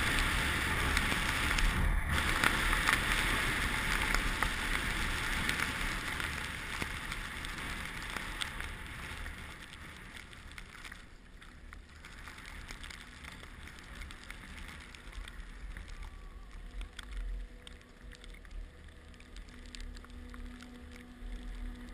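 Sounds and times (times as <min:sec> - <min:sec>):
wind buffeting microphone: 0:00.0 - 0:10.8
skis hissing on snow: 0:00.0 - 0:11.2
faint steady hum: 0:00.0 - 0:21.9.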